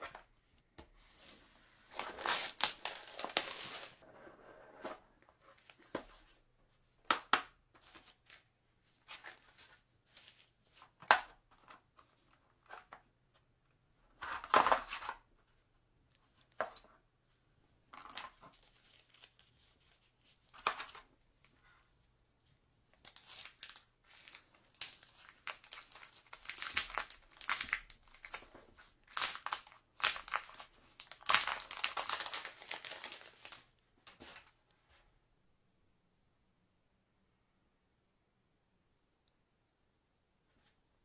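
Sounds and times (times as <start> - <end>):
packaging rustling and tearing: 1.9 - 4.0, 23.0 - 34.5.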